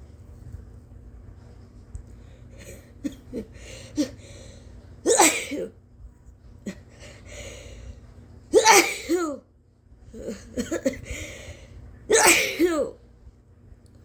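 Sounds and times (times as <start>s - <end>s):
woman sneezing: 5.1s - 5.7s, 8.6s - 9.4s, 12.1s - 13.0s
short catching breaths: 11.0s - 11.8s.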